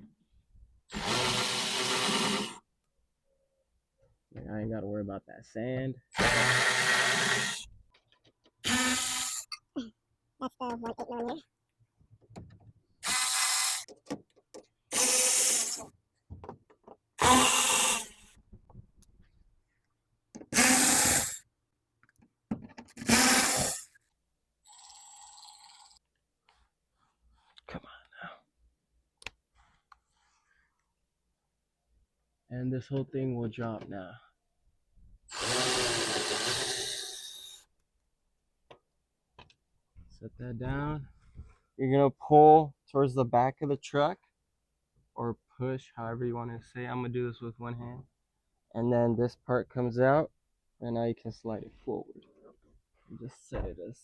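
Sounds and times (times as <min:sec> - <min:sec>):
power drill spinning out bolts: 0:00.9 - 0:02.6, 0:06.2 - 0:07.6, 0:08.6 - 0:09.5, 0:13.0 - 0:14.1, 0:14.9 - 0:15.9, 0:17.2 - 0:18.3, 0:20.5 - 0:21.4, 0:22.9 - 0:24.0, 0:35.3 - 0:37.6.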